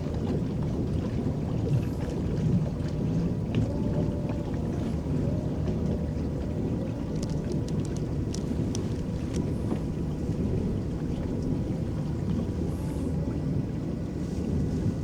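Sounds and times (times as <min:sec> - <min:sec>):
paddles churning water: 0:00.0 - 0:15.0
light ticks: 0:07.1 - 0:09.5.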